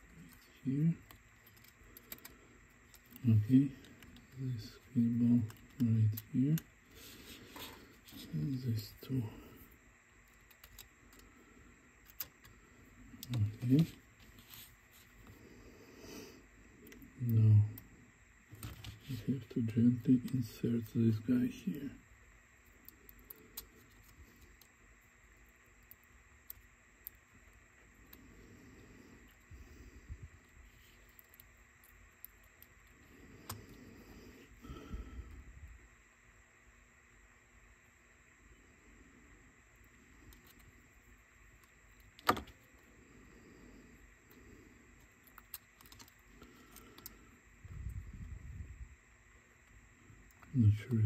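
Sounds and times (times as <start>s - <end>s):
faint light clicks of small parts: 0.0s - 6.7s, 10.2s - 11.3s, 13.2s - 15.4s, 22.6s - 28.3s, 30.4s - 33.8s, 40.2s - 42.9s, 45.0s - 47.2s
rubbing and handling noise: 0.0s - 16.2s, 18.4s - 21.0s, 22.6s - 34.6s.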